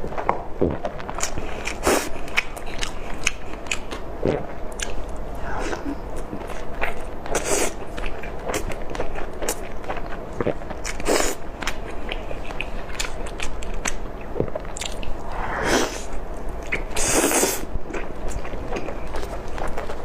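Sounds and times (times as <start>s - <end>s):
chewing with wet clicks and smacks: 1.0s - 4.1s, 4.7s - 5.2s, 7.8s - 15.2s, 17.9s - 20.0s.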